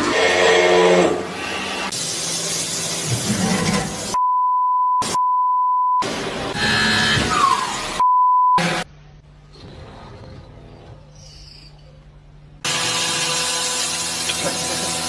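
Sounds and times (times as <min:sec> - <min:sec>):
censor bleep tone: 0:04.2 - 0:06.0, 0:08.0 - 0:08.6.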